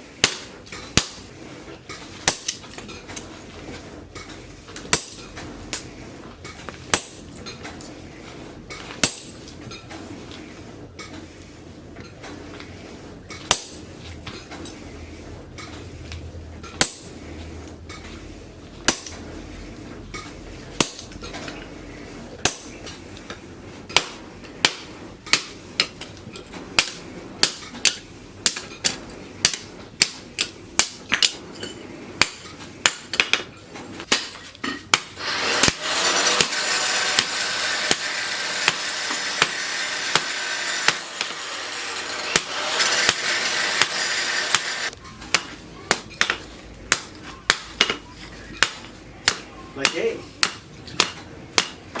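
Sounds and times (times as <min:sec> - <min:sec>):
hammer on steel on anvil: 0:00.2 - 0:01.3, 0:04.9 - 0:05.8, 0:06.9 - 0:07.7, 0:20.8 - 0:21.3, 0:22.4 - 0:23.0, 0:32.2 - 0:33.4, 0:42.3 - 0:48.0, 0:48.6 - 0:52.0.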